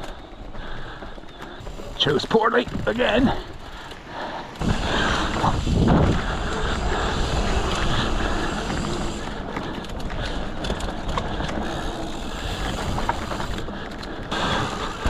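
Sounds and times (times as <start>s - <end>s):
bike clicks and rattles: 0.0s - 15.0s
bike tyre noise on dirt: 0.0s - 15.0s
wind rushing over microphone: 4.4s - 13.7s.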